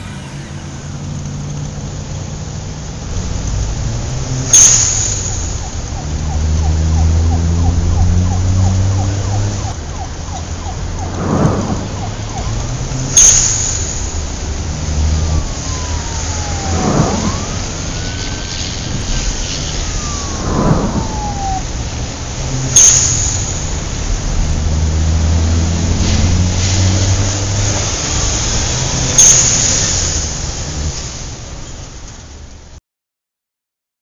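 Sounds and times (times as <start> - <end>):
whooshes: 0.0 - 1.8, 10.9 - 24.0
sharp cinematic hits: 0.0 - 2.0, 11.0 - 24.3
siren-like sweeps: 0.0 - 2.1, 4.8 - 24.5
low engine-like rumble: 0.0 - 28.9.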